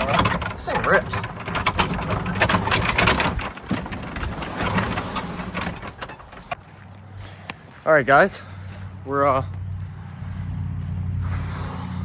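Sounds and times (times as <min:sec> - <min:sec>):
clattering noise: 0:00.0 - 0:06.6
vehicle engine running: 0:00.0 - 0:07.2, 0:08.6 - 0:12.0.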